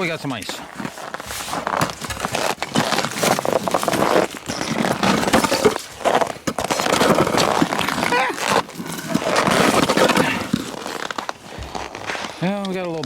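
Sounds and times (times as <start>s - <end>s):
ice crunching: 0.0s - 13.0s.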